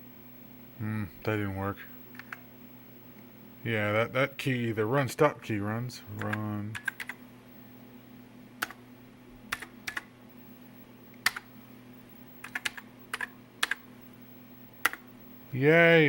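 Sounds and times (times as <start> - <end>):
steady low hum: 0.0 - 16.0
keyboard key clicks: 14.8 - 15.0.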